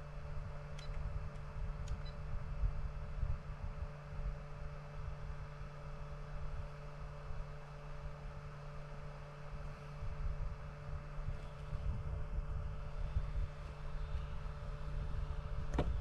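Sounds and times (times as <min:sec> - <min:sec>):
steady low hum: 0:00.0 - 0:16.0
wind on microphone: 0:10.0 - 0:16.0.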